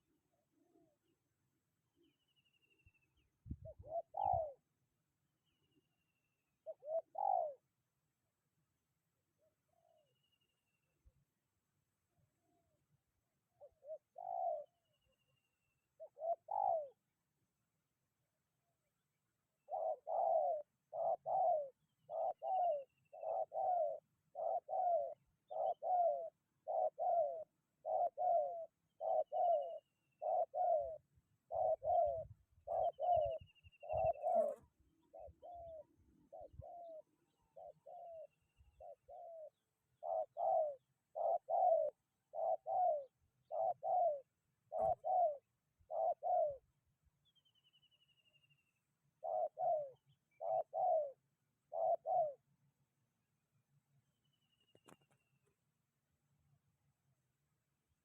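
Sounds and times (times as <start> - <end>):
dove cooing: 0.0 - 2.2, 2.8 - 4.9, 6.5 - 7.9, 12.4 - 17.2, 19.5 - 46.8, 49.0 - 52.6
small birds chirping: 19.6 - 52.4, 54.2 - 55.6.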